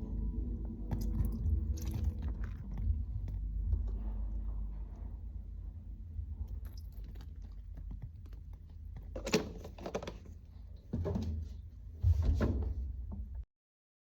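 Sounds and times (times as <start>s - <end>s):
clothes rustling and thumping: 9.1s - 13.0s.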